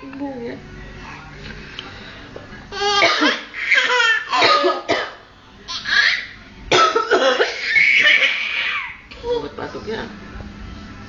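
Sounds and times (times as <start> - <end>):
child coughing: 2.9 - 5.2, 6.7 - 8.9.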